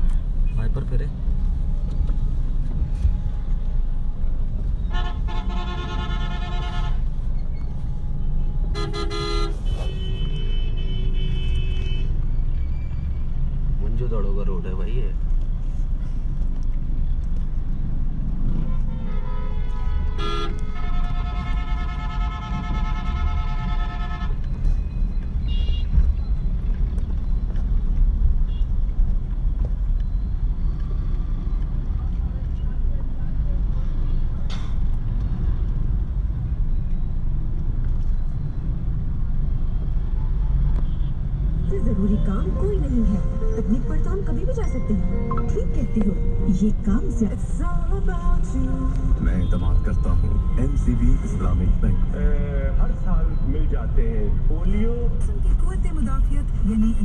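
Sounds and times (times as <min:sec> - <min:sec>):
low rumble of engines: 0:00.0 - 0:57.0
vehicle horns honking: 0:04.8 - 0:07.1, 0:08.7 - 0:12.2, 0:18.5 - 0:24.5, 0:25.4 - 0:26.0, 0:49.2 - 0:51.9
short higher horn beep: 0:44.6 - 0:46.8.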